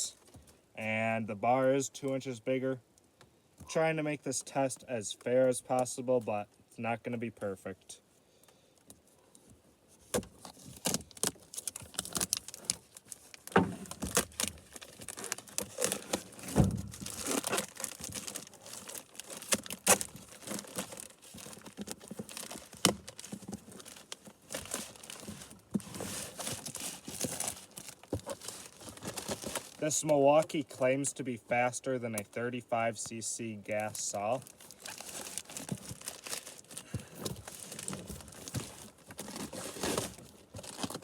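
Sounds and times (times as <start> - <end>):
packaging crinkling and tearing: 10.4 - 30.5, 33.8 - 41.0.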